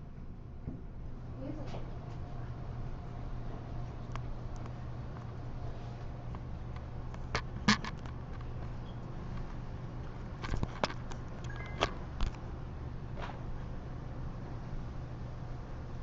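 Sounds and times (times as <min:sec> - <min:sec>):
steady low hum: 0:00.0 - 0:16.0
sharp clicks and knocks: 0:06.3 - 0:12.4.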